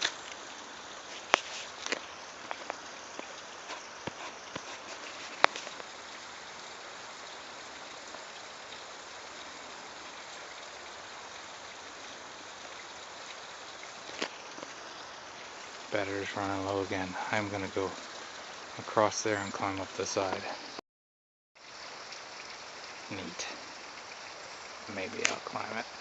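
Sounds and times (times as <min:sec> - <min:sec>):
waterfall splashing and trickling: 0:00.0 - 0:20.8, 0:21.6 - 0:26.0
crunching steps: 0:01.1 - 0:05.8.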